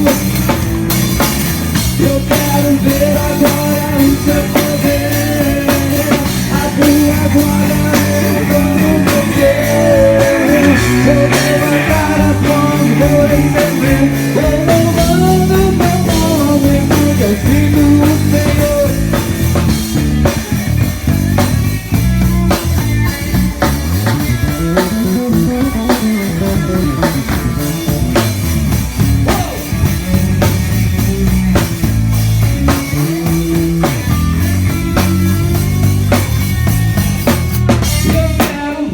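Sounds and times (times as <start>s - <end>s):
electric guitar bending notes: 0.0s - 38.9s
rock band playing: 0.0s - 38.9s.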